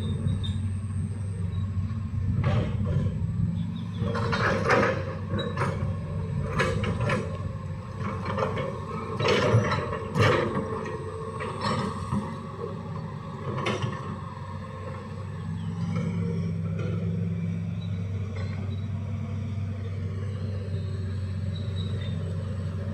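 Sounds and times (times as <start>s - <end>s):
excavator diesel engine running: 0.0s - 22.9s
metallic clanks and scrapes: 8.0s - 12.4s.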